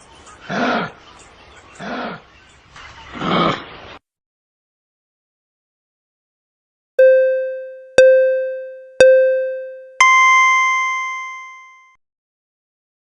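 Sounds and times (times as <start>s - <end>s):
electronic countdown beeps: 7.0s - 12.0s.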